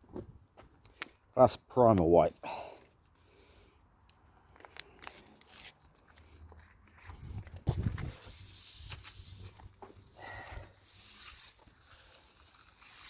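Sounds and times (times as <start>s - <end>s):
rubbing and scraping handling: 4.6s - 13.0s.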